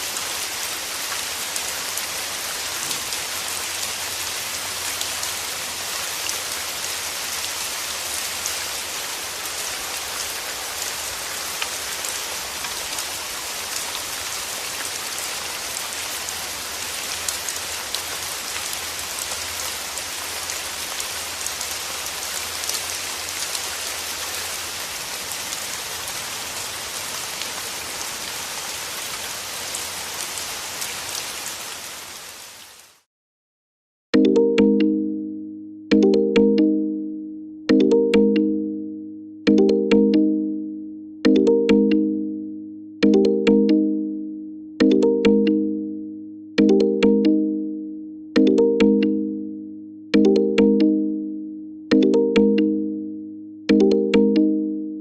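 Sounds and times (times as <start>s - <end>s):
steady rain: 0.0s - 33.1s.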